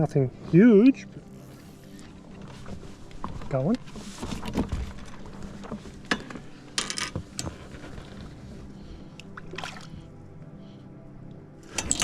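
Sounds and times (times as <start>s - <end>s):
fishing gear clicks and knocks: 0.8s - 9.9s, 11.7s - 12.0s.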